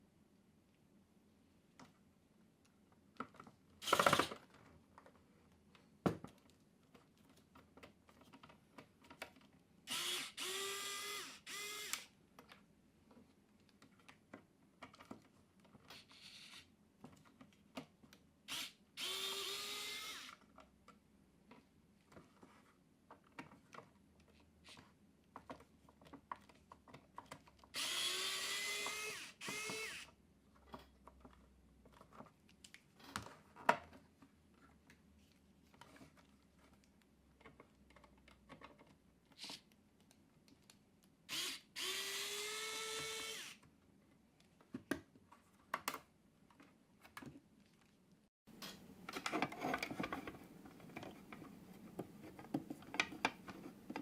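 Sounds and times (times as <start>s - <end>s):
small electric motor spinning: 9.9s - 12.0s, 18.5s - 20.3s, 27.8s - 30.1s, 41.3s - 43.6s
clicks and handling knocks: 48.5s - 54.0s.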